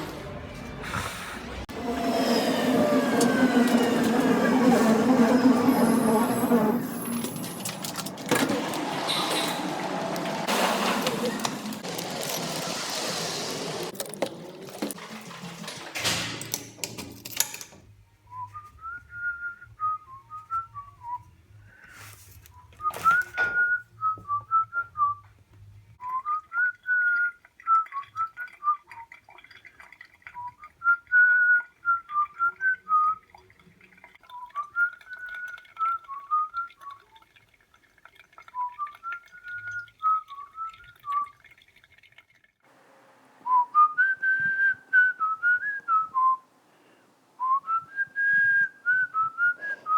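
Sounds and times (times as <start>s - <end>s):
person whistling a tune: 18.3s - 21.3s, 22.5s - 25.2s, 26.0s - 28.9s, 30.4s - 33.2s, 34.3s - 36.9s, 43.4s - 46.4s, 47.4s - 49.9s.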